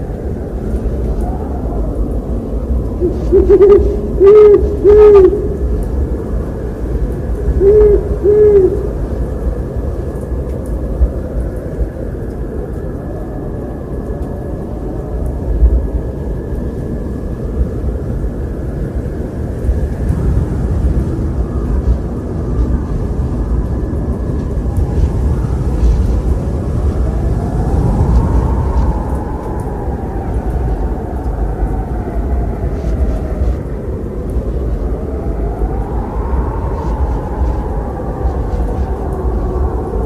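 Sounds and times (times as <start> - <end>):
low rumble of wind: 0.0 - 40.0
owl hooting: 3.0 - 5.8, 7.6 - 9.0.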